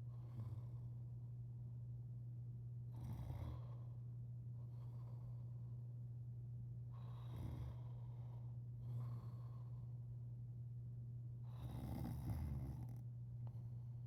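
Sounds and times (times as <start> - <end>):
steady low hum: 0.0 - 14.0
man snoring: 11.5 - 13.0.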